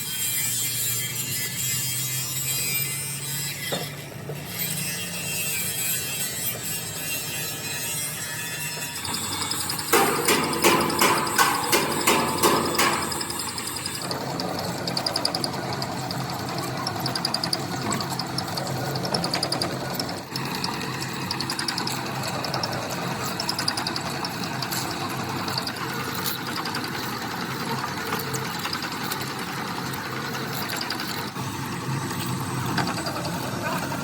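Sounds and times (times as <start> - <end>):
workshop machine humming: 0.0 - 34.0
rapid mechanical ticking: 8.9 - 34.0.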